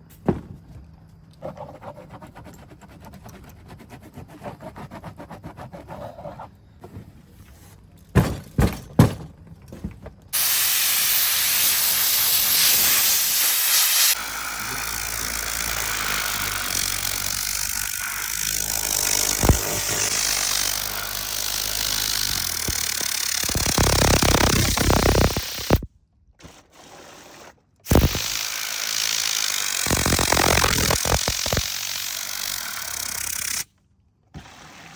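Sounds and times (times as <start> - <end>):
cleaning machine hissing: 10.4 - 25.8, 27.9 - 33.4.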